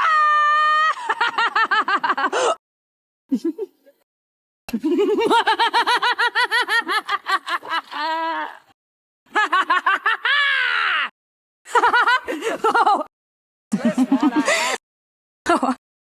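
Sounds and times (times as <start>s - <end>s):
high-pitched cackling laughter: 4.7s - 8.7s, 9.3s - 11.1s.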